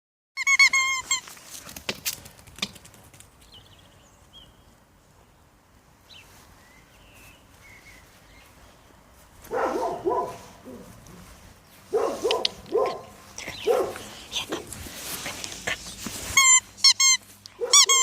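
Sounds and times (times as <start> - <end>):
squeaky dog toy squeaking: 0.4 - 1.3, 16.3 - 18.0.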